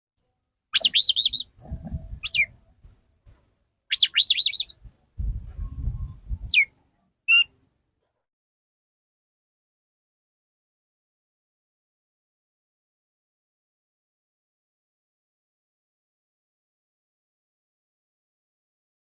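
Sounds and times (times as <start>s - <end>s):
bird warbling whistles: 0.8s - 1.5s, 2.2s - 2.5s, 3.9s - 4.8s, 6.4s - 6.7s, 7.3s - 7.5s
low rumbling noise: 1.5s - 3.0s, 4.8s - 6.5s.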